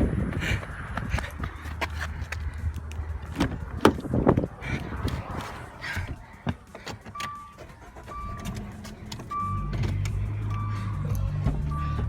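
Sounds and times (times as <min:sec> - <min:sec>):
car engine starting and idling: 0:00.0 - 0:12.0
car warning chime beeping: 0:06.8 - 0:12.0.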